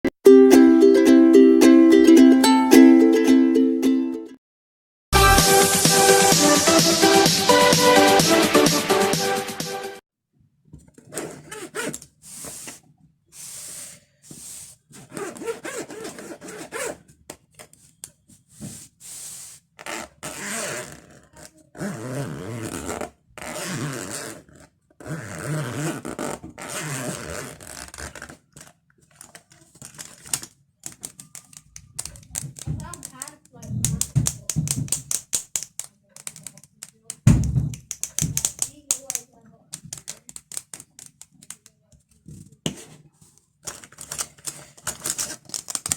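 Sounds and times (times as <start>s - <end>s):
fingernails scratching pencil case: 11.0s - 12.8s, 14.3s - 17.1s, 18.6s - 28.7s.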